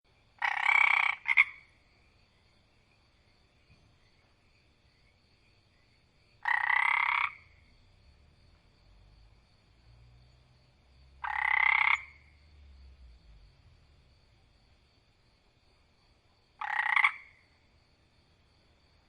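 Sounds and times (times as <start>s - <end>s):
faint high-pitched background tone: 0.1s - 11.2s, 11.9s - 19.0s
frog croaking: 0.4s - 1.8s, 6.4s - 7.8s, 11.1s - 12.9s, 16.5s - 17.7s.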